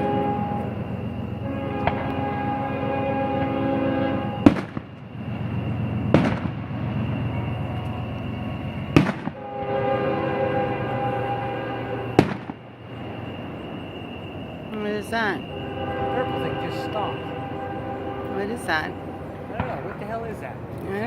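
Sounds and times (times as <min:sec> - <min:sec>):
fireworks bursting: 0:00.8 - 0:02.6, 0:03.3 - 0:09.5, 0:12.0 - 0:15.4, 0:19.5 - 0:20.4.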